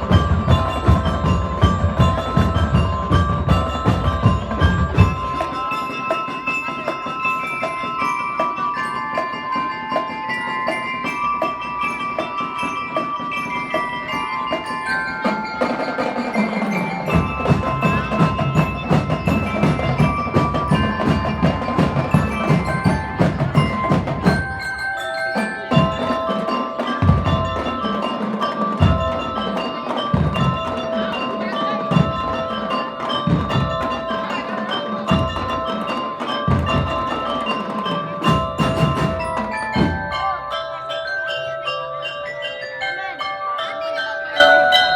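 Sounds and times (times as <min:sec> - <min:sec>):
marching snare and bass drums: 0:00.0 - 0:06.2, 0:15.4 - 0:40.3
bell lyres ringing a melody: 0:00.0 - 0:44.9.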